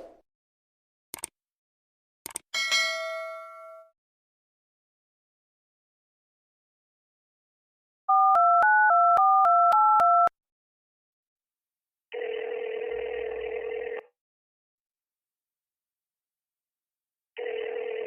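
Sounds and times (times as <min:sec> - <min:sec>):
telephone keypad tones: 0:08.1 - 0:10.3
telephone ringback tone: 0:08.1 - 0:10.3, 0:12.2 - 0:14.1, 0:17.4 - 0:18.0.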